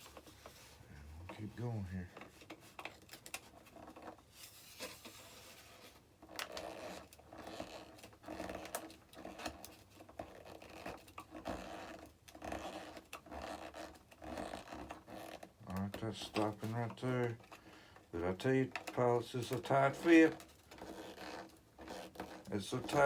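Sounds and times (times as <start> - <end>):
screwdriver turning a screw: 20.0 - 23.0.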